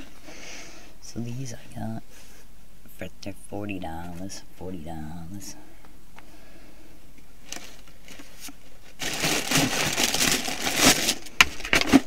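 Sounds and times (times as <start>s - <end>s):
wrapping crinkling: 7.4s - 12.0s.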